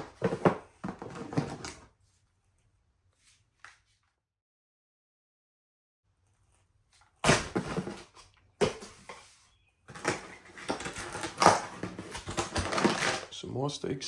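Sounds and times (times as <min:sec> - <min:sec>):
packaging rustling and clattering: 0:00.0 - 0:01.9, 0:07.2 - 0:09.3, 0:09.9 - 0:13.3.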